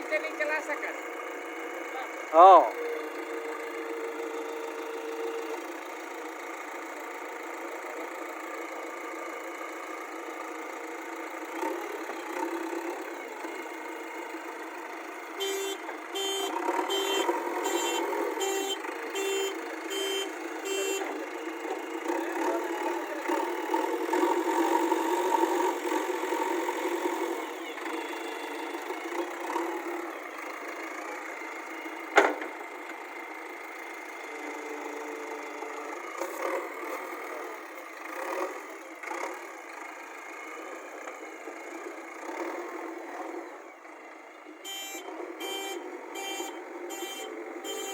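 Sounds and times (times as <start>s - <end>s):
backhoe loader engine running: 0.0s - 47.9s
reversing alarm beeping: 44.7s - 47.9s.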